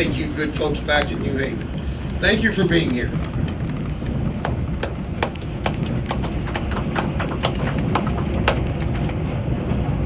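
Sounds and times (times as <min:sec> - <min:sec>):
train rumbling on track: 0:00.0 - 0:10.0
wheels clicking and knocking: 0:00.0 - 0:10.0.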